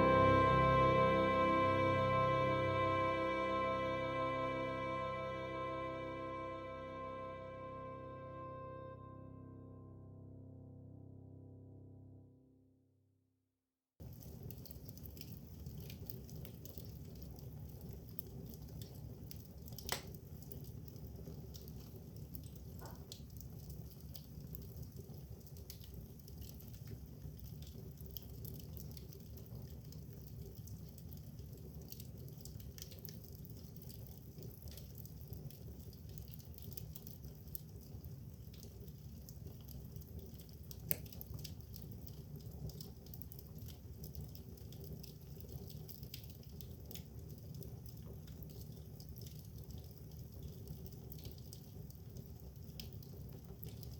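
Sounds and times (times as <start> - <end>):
wood fire crackling: 0.0 - 7.5, 14.0 - 53.9
fire pops: 14.0 - 53.9.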